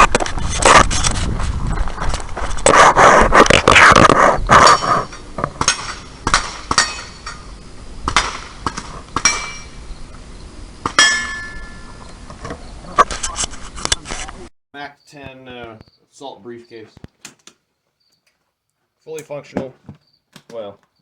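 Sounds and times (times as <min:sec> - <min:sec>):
sharp metallic clinks and knocks: 0:04.6 - 0:07.5.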